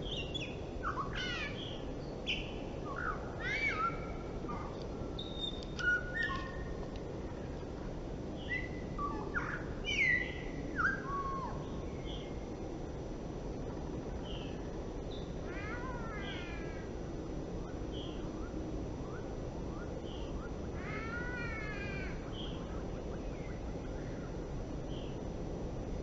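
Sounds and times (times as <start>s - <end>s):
low background noise: 0.0s - 26.0s
bird meowing calls: 0.1s - 6.7s, 8.4s - 11.8s, 15.4s - 16.9s, 20.8s - 22.6s.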